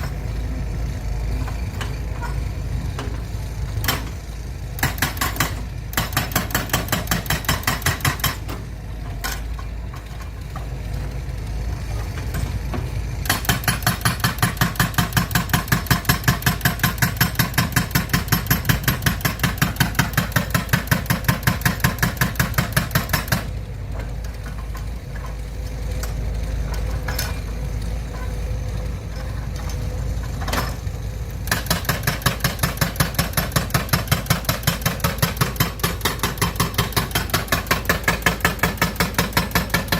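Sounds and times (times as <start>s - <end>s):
machine running steadily: 0.0s - 39.9s
rapid mechanical clatter: 29.1s - 39.9s.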